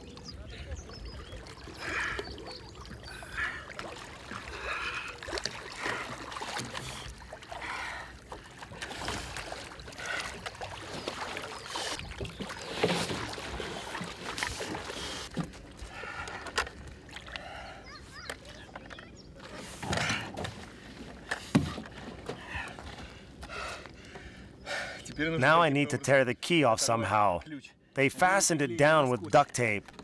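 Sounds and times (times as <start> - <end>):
water splashing from swimming: 0.0 - 23.6.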